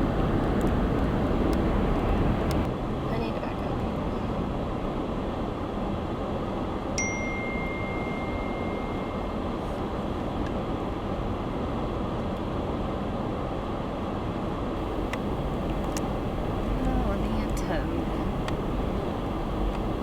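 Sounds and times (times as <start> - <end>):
car engine and road noise: 0.0 - 2.8, 14.8 - 20.0
dashboard chime: 7.0 - 9.8.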